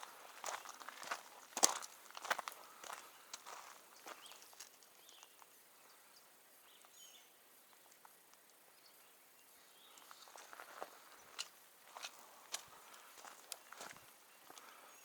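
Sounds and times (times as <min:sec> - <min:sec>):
soft bird chirps: 0:03.0 - 0:11.6, 0:12.7 - 0:15.0.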